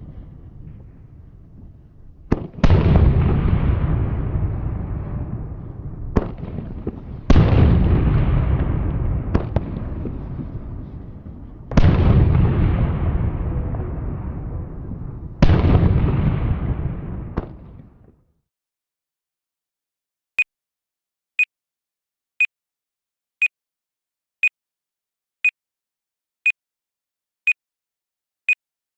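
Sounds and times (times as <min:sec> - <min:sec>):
heavy explosions rumbling: 0:00.0 - 0:18.1.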